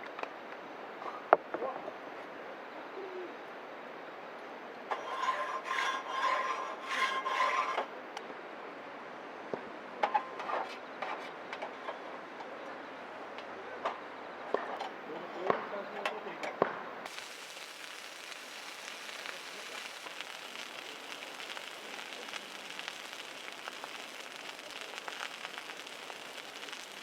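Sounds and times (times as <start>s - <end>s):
wood fire crackling: 17.0s - 27.0s
hissing rush with steady tone: 17.1s - 27.0s.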